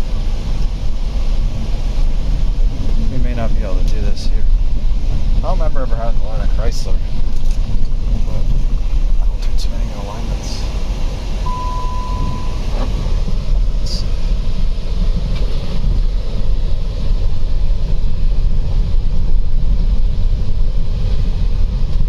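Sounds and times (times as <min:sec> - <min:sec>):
wind on microphone: 0:00.0 - 0:05.6, 0:10.6 - 0:22.0
car road and wind rumble: 0:00.0 - 0:22.0
electronic beep: 0:11.5 - 0:12.7.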